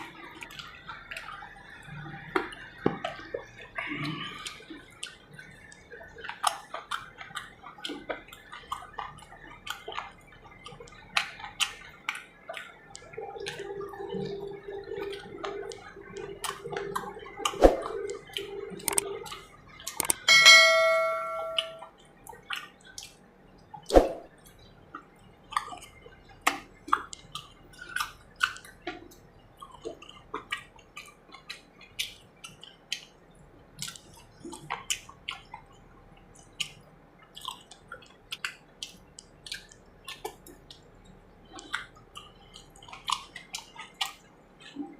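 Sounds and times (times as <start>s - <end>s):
person chewing food: 0.0s - 20.4s, 21.4s - 44.9s
bright metallic ring: 20.2s - 21.9s.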